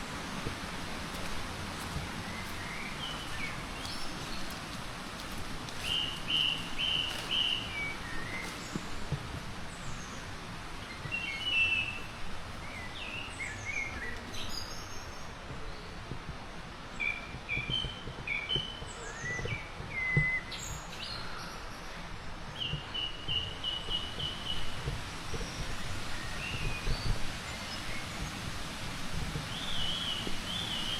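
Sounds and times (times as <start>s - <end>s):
background hiss: 0.0s - 30.9s
songbirds chirping and trilling: 0.1s - 30.9s.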